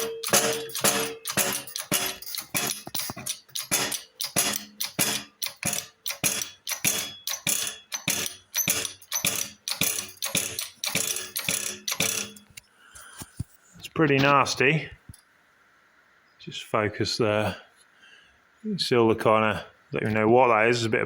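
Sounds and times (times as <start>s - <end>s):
sharp metallic clicks: 0.0s - 12.6s.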